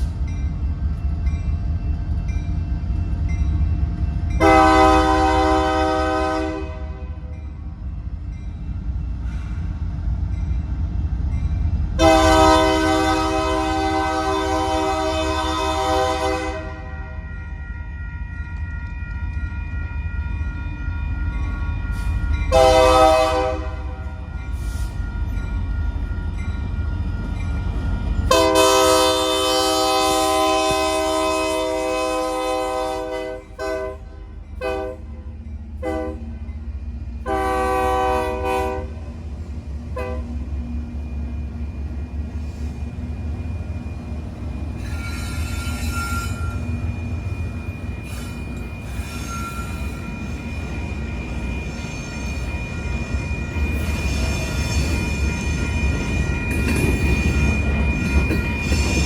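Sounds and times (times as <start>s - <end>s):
low train rumble: 0.0s - 59.0s
locomotive air horn: 4.4s - 7.2s, 12.0s - 17.0s, 22.5s - 24.0s, 28.3s - 35.1s, 35.8s - 36.2s, 37.2s - 39.0s, 40.0s - 40.3s.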